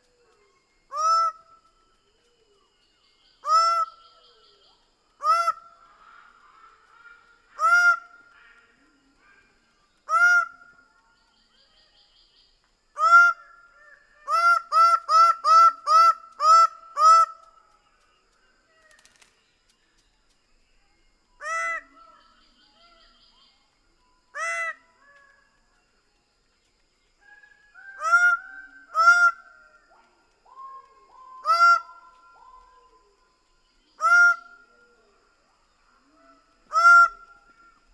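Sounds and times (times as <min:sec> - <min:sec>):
faint high bird chirping: 0:00.0 - 0:12.7, 0:17.4 - 0:37.9.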